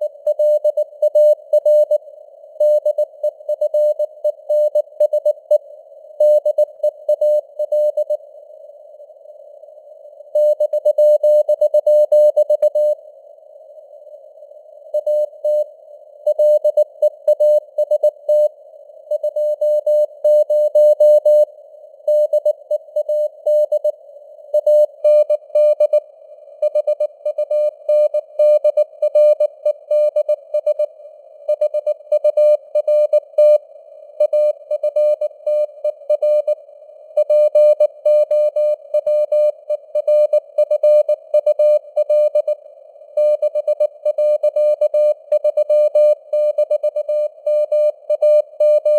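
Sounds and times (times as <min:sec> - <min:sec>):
receiver hiss: 0:00.0 - 0:48.9.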